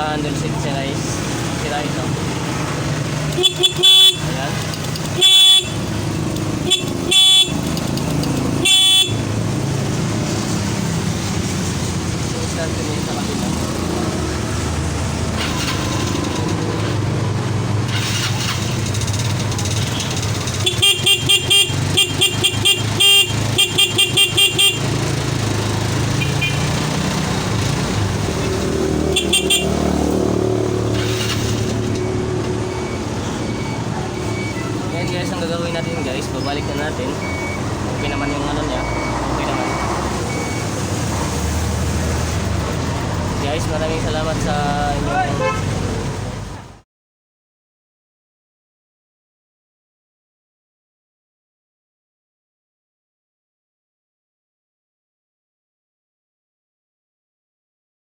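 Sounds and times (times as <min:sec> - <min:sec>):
scooter horn beeping: 0:03.3 - 0:07.8, 0:08.4 - 0:09.4, 0:19.7 - 0:25.3, 0:26.0 - 0:27.8, 0:29.0 - 0:30.1, 0:45.3 - 0:45.7.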